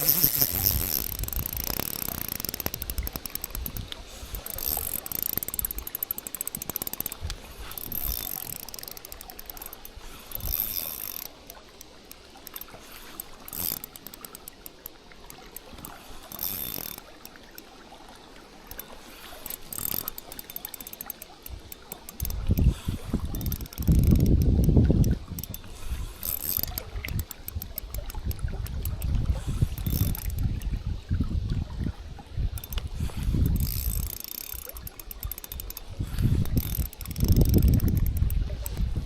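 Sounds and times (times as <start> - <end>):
wind buffeting microphone: 0.0 - 5.8, 21.5 - 39.0
fishing reel clicking: 0.0 - 17.9, 18.5 - 30.9, 32.5 - 39.0.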